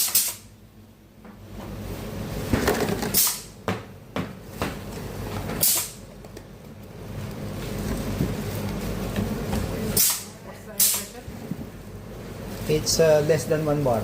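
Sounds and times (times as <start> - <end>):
compressed air hissing: 0.0 - 0.4, 5.6 - 6.0, 10.0 - 11.2.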